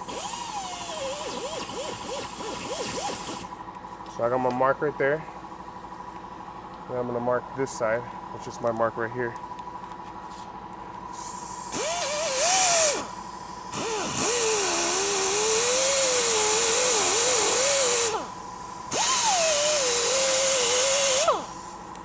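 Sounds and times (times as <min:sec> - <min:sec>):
grinder motor whine: 0:00.0 - 0:04.9, 0:11.1 - 0:22.0.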